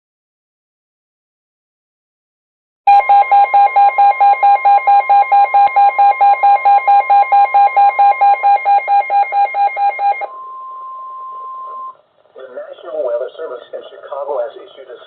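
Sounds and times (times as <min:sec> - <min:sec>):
alarm beeping rapidly: 0:02.9 - 0:12.0
steady warning alarm tone: 0:02.9 - 0:12.0.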